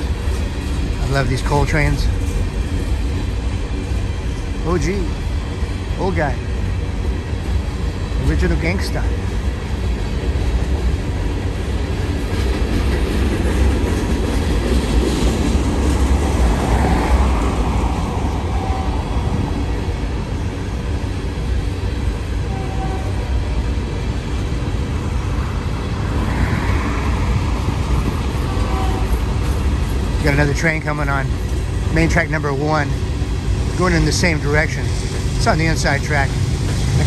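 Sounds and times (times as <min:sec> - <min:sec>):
train wheels rumbling on rails: 0:00.0 - 0:37.0.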